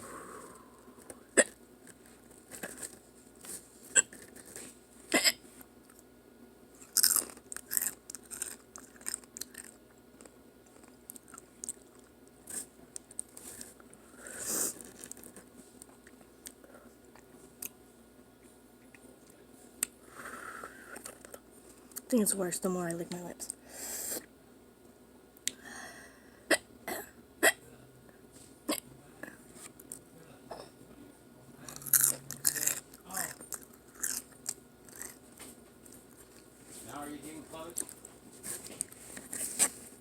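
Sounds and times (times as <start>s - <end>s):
chewing and crunching chips: 1.8s - 4.8s, 6.8s - 17.8s, 20.9s - 22.1s, 31.6s - 36.5s, 37.1s - 39.8s.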